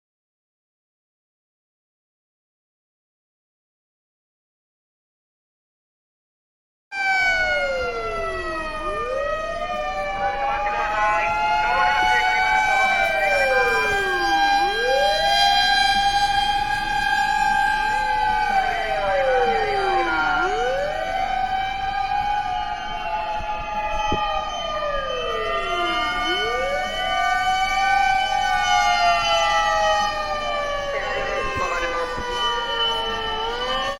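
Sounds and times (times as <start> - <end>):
fire engine sirens wailing: 6.9 - 33.9.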